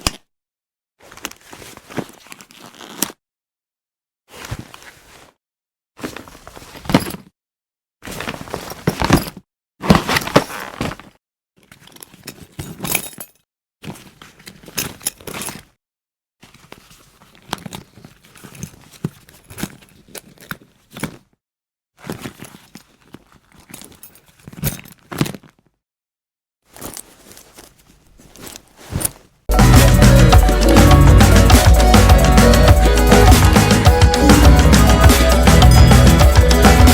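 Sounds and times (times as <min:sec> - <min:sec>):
bag thudding down: 0:08.8 - 0:11.1, 0:28.8 - 0:29.3
fabric rustling: 0:26.7 - 0:29.5.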